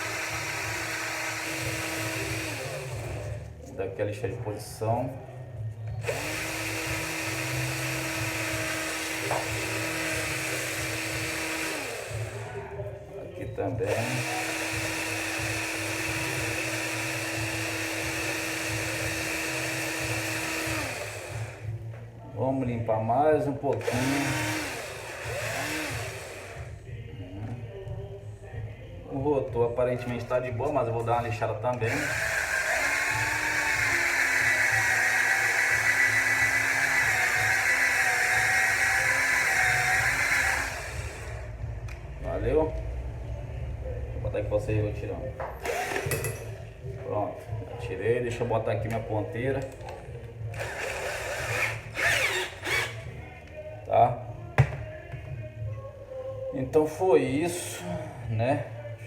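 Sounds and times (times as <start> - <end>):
electric screwdriver motor running: 0.0 - 3.3, 6.0 - 12.5, 13.9 - 21.7, 23.8 - 26.7, 31.8 - 41.4, 45.7 - 46.2, 50.6 - 53.1.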